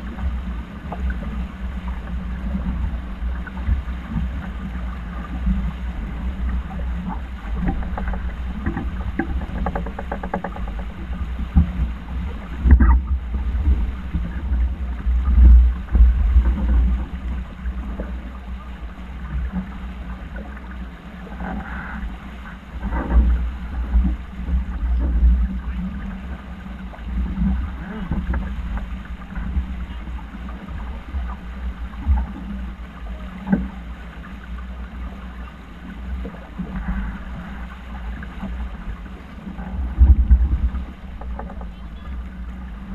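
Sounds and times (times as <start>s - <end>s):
rushing water: 0.0s - 42.9s.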